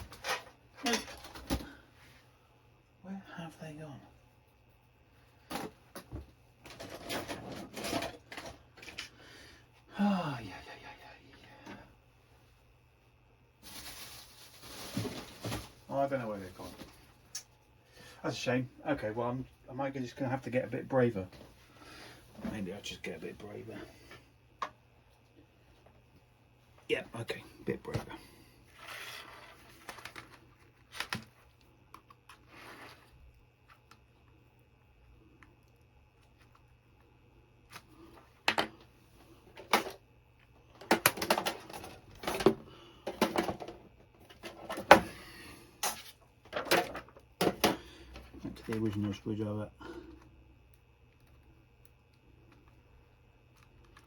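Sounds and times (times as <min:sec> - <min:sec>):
objects rustling and scraping: 0:00.0 - 0:02.3, 0:05.3 - 0:09.3, 0:13.6 - 0:17.2, 0:27.8 - 0:33.9, 0:37.7 - 0:49.2.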